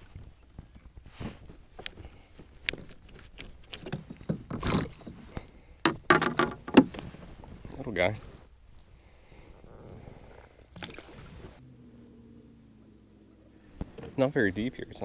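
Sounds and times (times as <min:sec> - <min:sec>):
knocks and clicks: 0:05.9 - 0:07.0.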